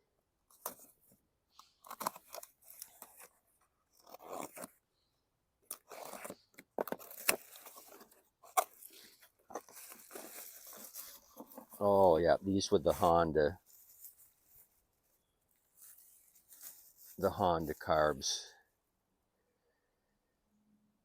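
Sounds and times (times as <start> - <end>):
packaging tearing and crinkling: 4.0 - 4.8, 5.7 - 11.5.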